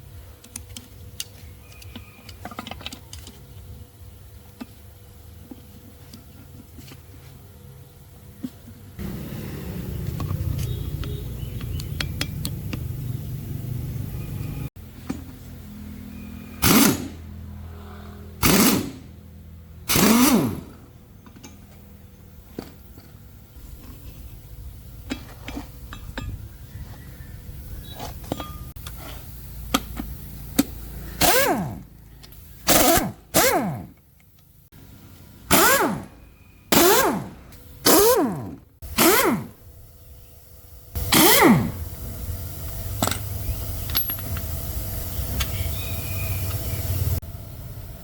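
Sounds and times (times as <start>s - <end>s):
power tool bursts winding down: 16.6s - 17.2s, 18.4s - 19.0s, 19.9s - 20.8s, 31.0s - 31.9s, 35.5s - 36.1s, 36.7s - 39.6s, 41.0s - 43.1s.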